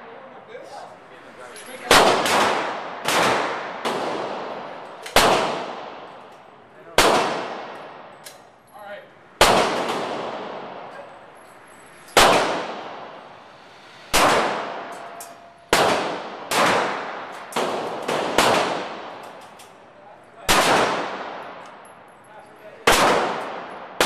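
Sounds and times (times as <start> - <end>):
pistol shots echoing: 1.9 - 6.3, 6.9 - 8.3, 9.4 - 11.0, 12.2 - 13.1, 14.1 - 19.4, 20.5 - 21.8, 22.8 - 24.0.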